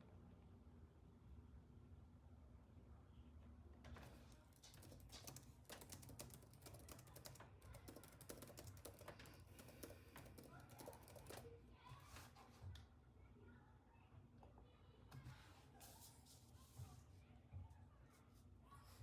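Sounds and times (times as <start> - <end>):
faint typing on keyboard: 3.9 - 12.9.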